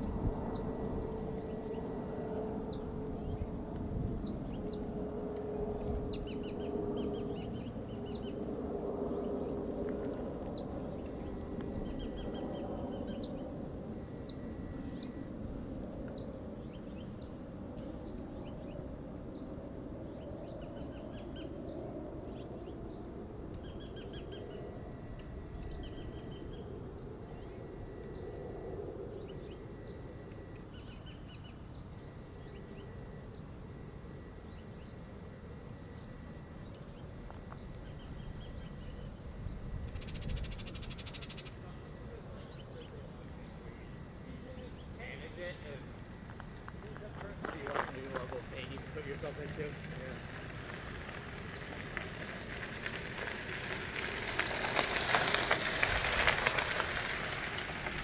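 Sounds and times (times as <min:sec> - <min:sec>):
low background rumble: 0:00.0 - 0:58.0
small birds chirping: 0:00.4 - 0:15.3, 0:16.0 - 0:24.6, 0:36.6 - 0:46.0.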